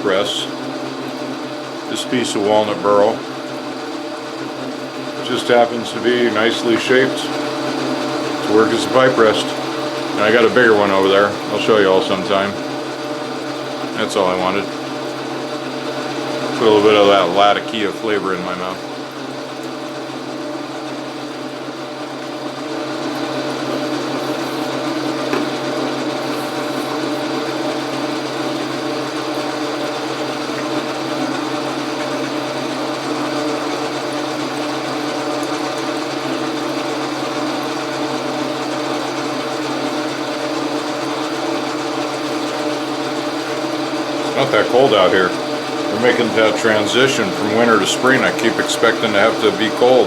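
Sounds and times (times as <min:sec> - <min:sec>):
metal lathe whirring and rattling: 0:00.0 - 0:50.0.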